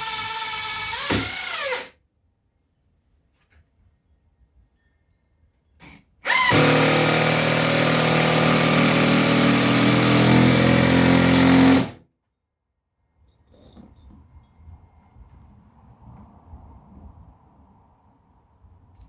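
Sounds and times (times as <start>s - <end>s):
power drill driving a screw: 0.0s - 1.9s, 6.2s - 12.0s.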